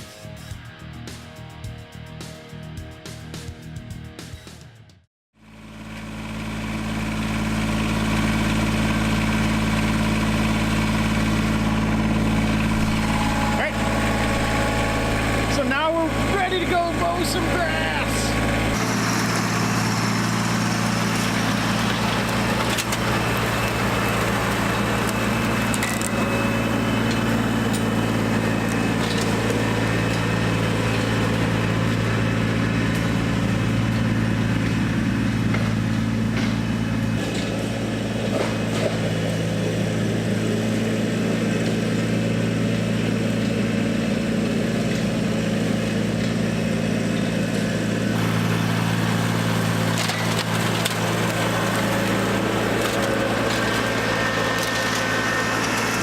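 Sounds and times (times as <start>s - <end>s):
tractor diesel engine running: 5.4s - 56.0s.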